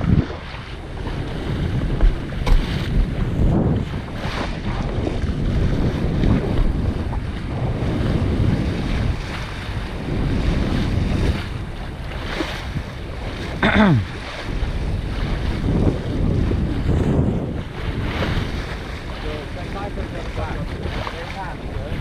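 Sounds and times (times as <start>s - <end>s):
rushing water: 0.0s - 22.0s
wind buffeting microphone: 0.0s - 22.0s.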